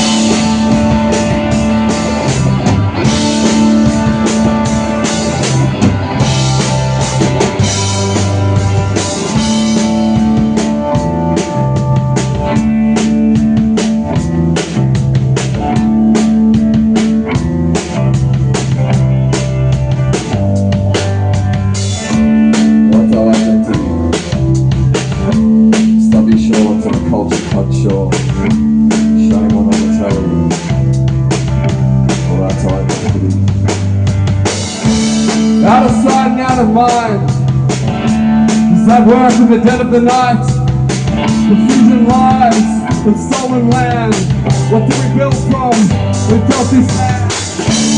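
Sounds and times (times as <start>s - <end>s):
drum kit steady beat: 0.0s - 47.9s
guitar: 0.0s - 47.9s
repeating low bass line: 0.0s - 47.9s.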